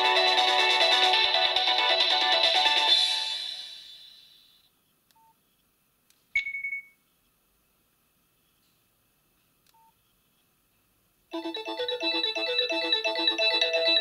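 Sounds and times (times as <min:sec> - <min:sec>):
phone ringtone: 0:11.4 - 0:14.0.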